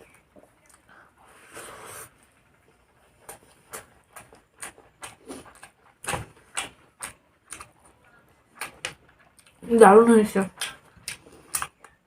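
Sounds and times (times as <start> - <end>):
chewing with lip smacks: 2.7 - 9.6.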